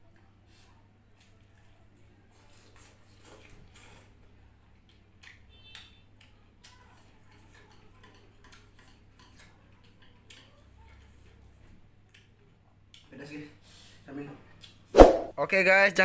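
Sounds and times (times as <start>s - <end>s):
wet chewing sounds: 1.2s - 13.1s.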